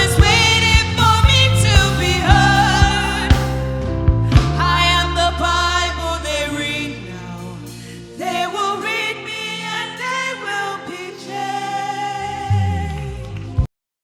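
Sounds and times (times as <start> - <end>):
band accompaniment with bass: 0.0 - 8.2, 12.4 - 13.7
gospel choir singing: 0.0 - 13.3.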